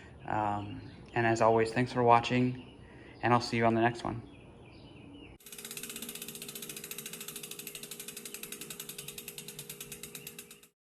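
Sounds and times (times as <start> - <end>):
bicycle freewheel ticking: 5.4 - 10.8.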